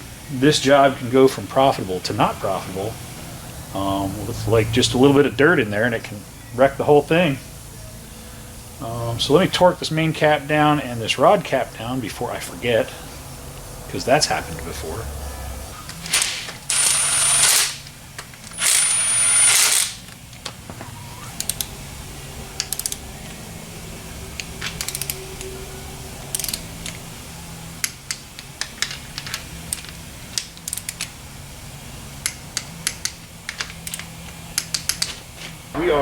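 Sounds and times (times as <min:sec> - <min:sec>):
compressed-air tool hissing: 0:15.8 - 0:18.0
ratchet clicks: 0:16.1 - 0:20.5, 0:21.4 - 0:21.7, 0:22.6 - 0:23.0, 0:24.4 - 0:25.5, 0:26.3 - 0:27.0, 0:27.8 - 0:31.2, 0:32.2 - 0:35.2.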